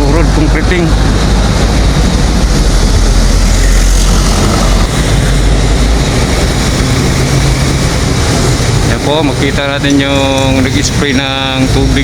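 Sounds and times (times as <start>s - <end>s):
engines running: 0.0s - 12.0s
traffic rumbling: 0.0s - 12.0s.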